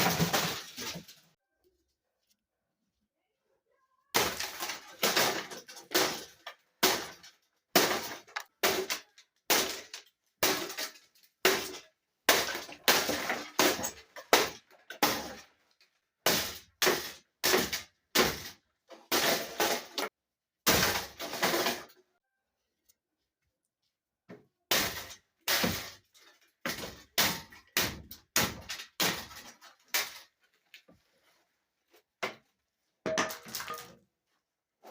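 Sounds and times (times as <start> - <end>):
box fan being smashed: 0.0 - 1.2, 4.2 - 15.5, 16.3 - 21.9, 24.7 - 30.3.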